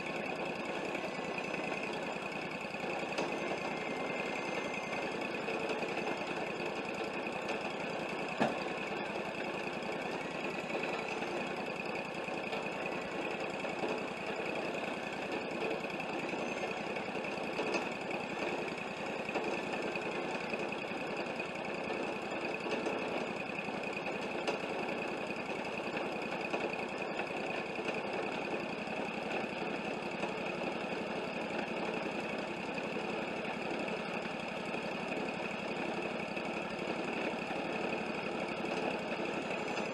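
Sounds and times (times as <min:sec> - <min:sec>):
bandsaw sawmill running: 0:00.0 - 0:39.9.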